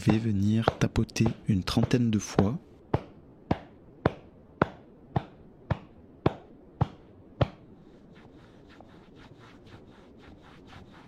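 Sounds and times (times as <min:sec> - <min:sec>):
hand tapping on back: 0:00.0 - 0:07.6.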